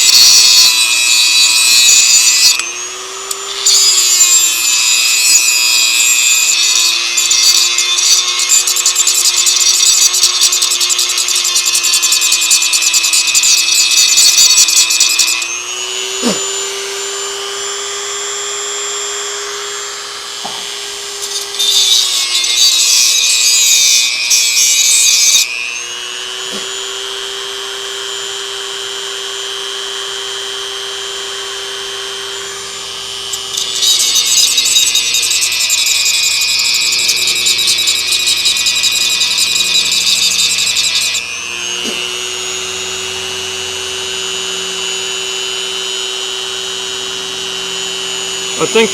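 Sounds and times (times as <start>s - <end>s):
rotary tool grinding metal: 0.0s - 48.9s
rotary tool motor whine: 0.0s - 48.9s.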